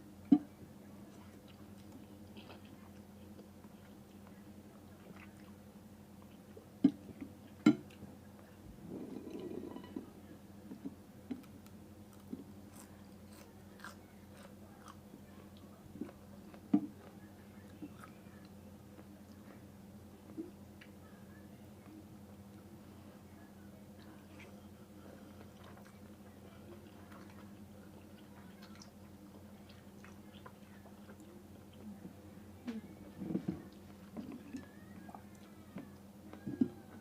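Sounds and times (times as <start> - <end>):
faint steady hum: 0.0 - 37.0
person chewing: 12.1 - 15.0.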